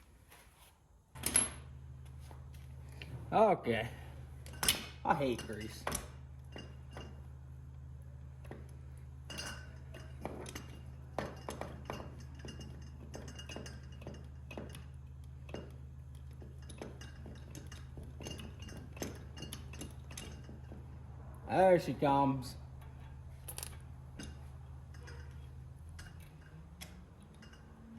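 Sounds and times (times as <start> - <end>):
steady low hum: 1.1 - 27.9
light metallic clinks and clicks: 8.4 - 21.0, 22.8 - 27.9.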